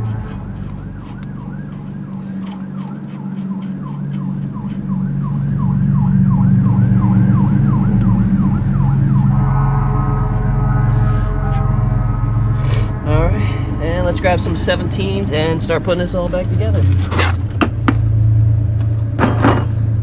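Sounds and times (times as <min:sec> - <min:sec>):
siren-like yelp: 0:00.0 - 0:15.8
steady low drone: 0:00.0 - 0:20.0.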